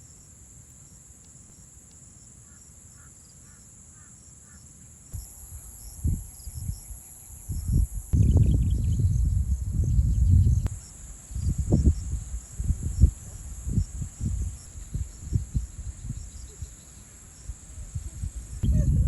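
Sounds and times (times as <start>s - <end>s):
insects chorus: 0.0s - 19.0s
wind buffeting microphone: 5.2s - 19.0s.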